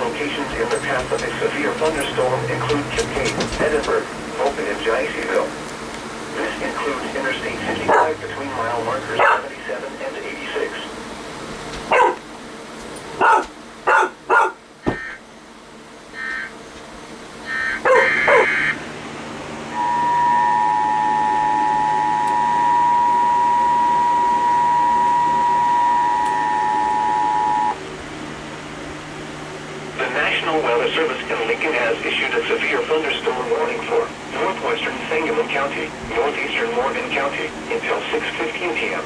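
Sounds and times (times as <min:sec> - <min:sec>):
two-tone alert signal: 0:19.7 - 0:27.8.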